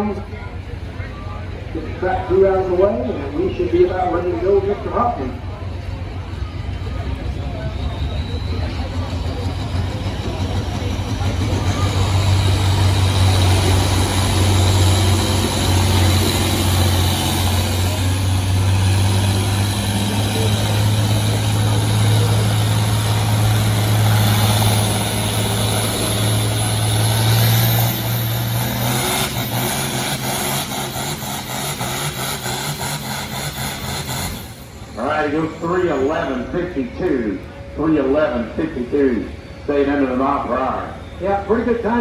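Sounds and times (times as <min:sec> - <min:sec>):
tractor engine running hard: 0:00.0 - 0:42.0
engine rapid knocking: 0:04.9 - 0:34.7.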